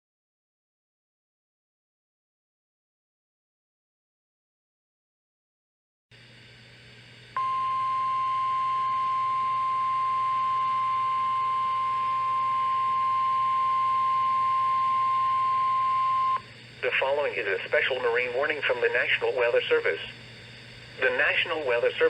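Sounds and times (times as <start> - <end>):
faint radio hiss and hum: 6.2 - 22.0
steady warning beep tone: 7.4 - 16.4.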